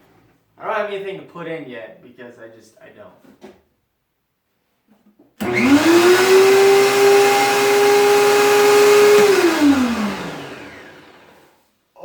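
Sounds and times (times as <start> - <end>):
thickness planer whine: 5.4 - 11.5.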